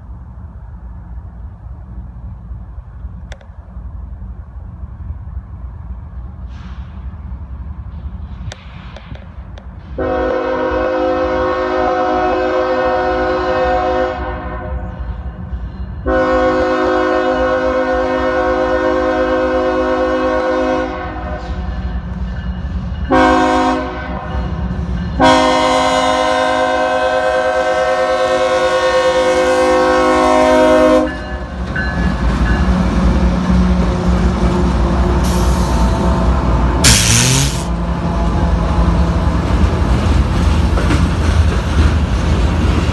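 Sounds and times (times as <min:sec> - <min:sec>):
train rumbling past: 0:00.0 - 0:42.9
locomotive air horn blasts: 0:10.0 - 0:14.8, 0:16.0 - 0:21.5, 0:23.1 - 0:24.3, 0:25.2 - 0:31.3, 0:34.6 - 0:39.2.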